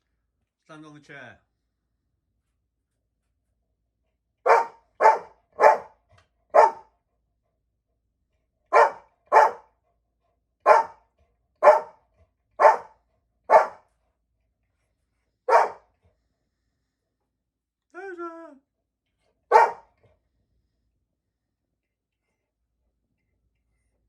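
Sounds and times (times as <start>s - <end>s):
dog barking: 4.4s - 6.9s, 8.7s - 9.7s, 10.6s - 11.0s, 11.6s - 12.0s, 12.6s - 13.8s, 15.5s - 15.9s, 19.5s - 20.0s.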